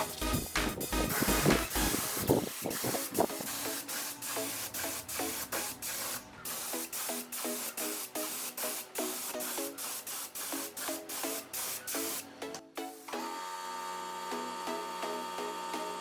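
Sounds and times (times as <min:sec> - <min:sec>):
compressed air spray hissing: 0:00.0 - 0:12.3
electronic music with beat: 0:00.0 - 0:13.1.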